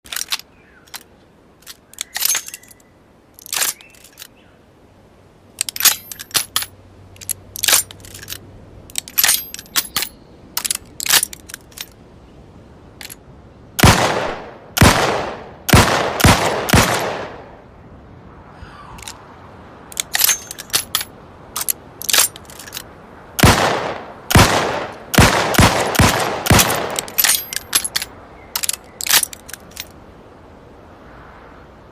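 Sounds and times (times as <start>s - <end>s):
metallic gun clicks: 0.1s - 4.3s, 5.6s - 12.0s, 25.9s - 30.0s
heavy gunshots ringing: 13.8s - 17.4s, 23.4s - 27.0s.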